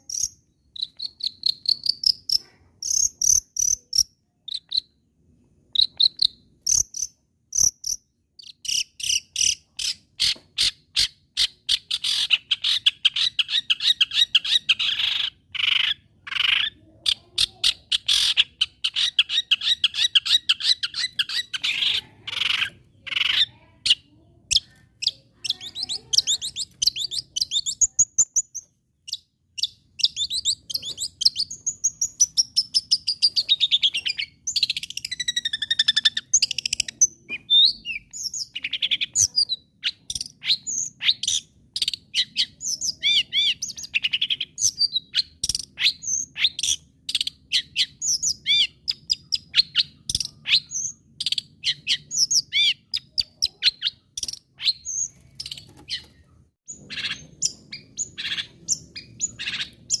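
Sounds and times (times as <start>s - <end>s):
shrike singing chattering song: 17.4s - 46.8s.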